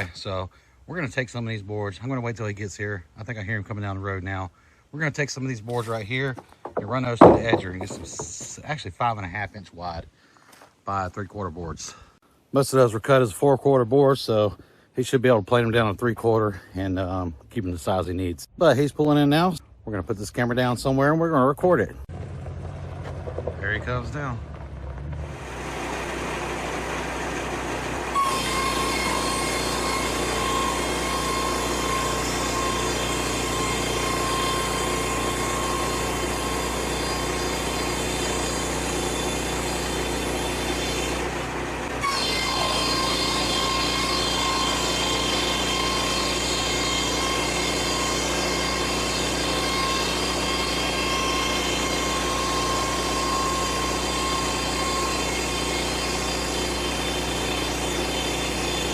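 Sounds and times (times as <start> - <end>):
board edger engine whine: 22.1 - 58.9.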